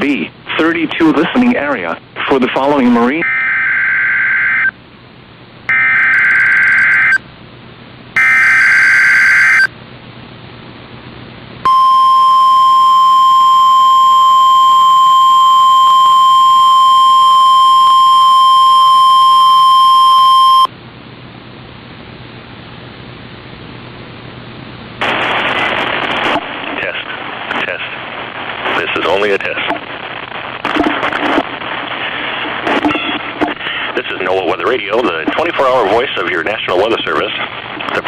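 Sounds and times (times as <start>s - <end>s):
weather radio alarm tone: 3.2s - 4.7s, 5.7s - 7.2s, 8.2s - 9.7s, 11.7s - 20.7s
harsh buzzing data bursts: 5.7s - 7.2s, 8.2s - 9.7s.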